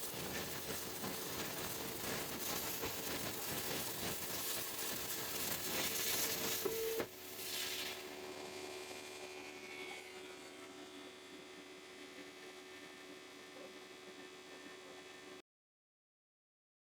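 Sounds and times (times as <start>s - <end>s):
plasma cutter hiss: 0.0s - 8.2s.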